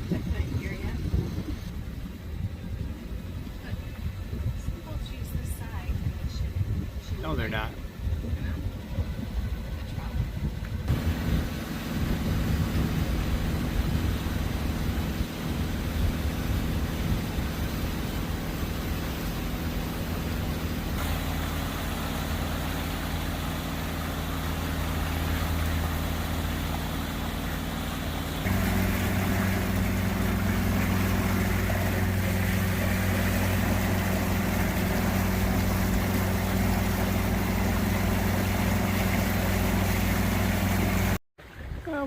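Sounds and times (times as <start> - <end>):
boat engine running: 0.0 - 42.0.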